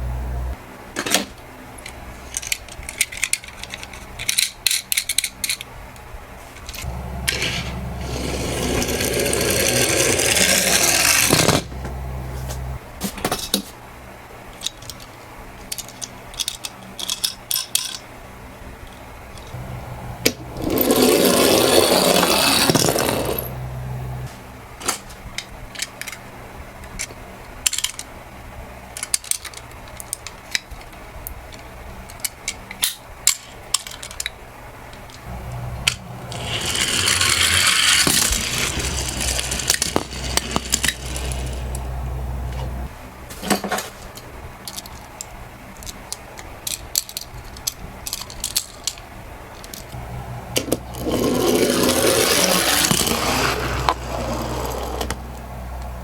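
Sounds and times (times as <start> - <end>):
toy cars clicking together: 1.1 - 5.7, 14.6 - 18.0, 25.4 - 28.1, 28.9 - 35.2, 36.3 - 41.8, 44.1 - 50.0
toy cars rattling down track: 7.3 - 11.7, 20.6 - 23.5, 35.9 - 41.8, 50.6 - 55.2.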